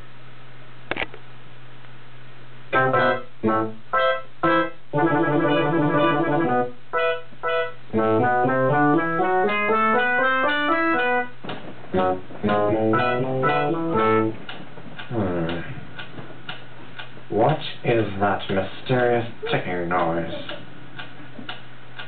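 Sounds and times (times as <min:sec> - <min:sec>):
keyboard music: 0:02.7 - 0:11.4, 0:12.0 - 0:14.4.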